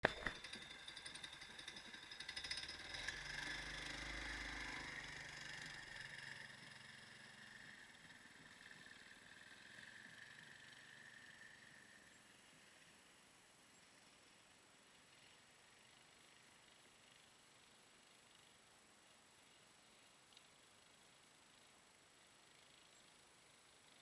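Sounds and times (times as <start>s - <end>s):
rapid clicking and clatter: 0.0s - 3.1s
small atv engine running: 0.0s - 23.8s.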